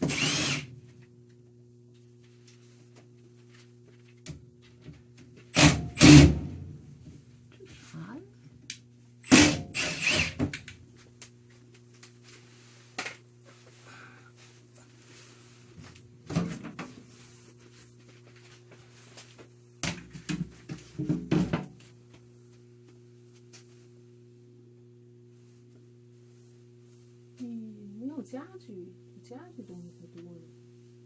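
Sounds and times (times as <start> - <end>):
steady low hum: 0.0 - 31.0
objects knocking and clattering: 19.8 - 21.8.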